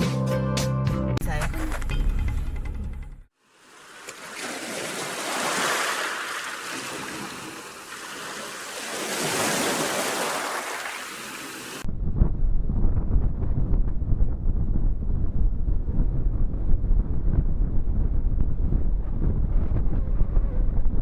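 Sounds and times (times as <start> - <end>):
surf waves washing in: 3.4 - 11.9
wind buffeting microphone: 11.8 - 21.0.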